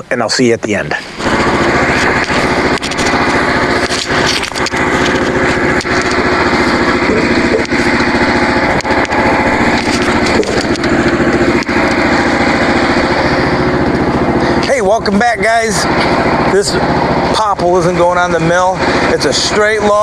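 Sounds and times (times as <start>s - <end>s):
small engine running: 1.0s - 20.0s.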